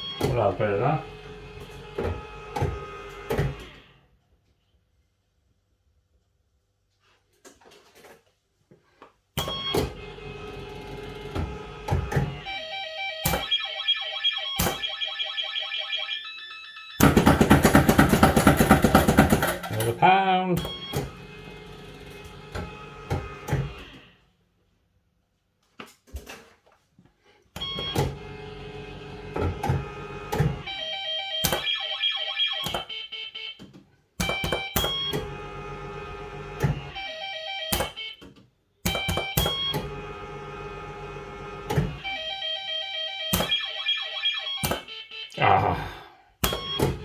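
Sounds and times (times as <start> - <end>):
electronic bleeping tones: 12.5 - 17.2, 30.7 - 33.6, 42.1 - 45.8.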